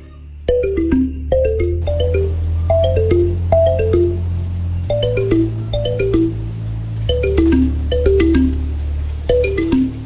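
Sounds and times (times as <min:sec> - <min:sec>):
held bass note: 0:00.0 - 0:10.0
plucked marimba-like melody: 0:00.5 - 0:10.0.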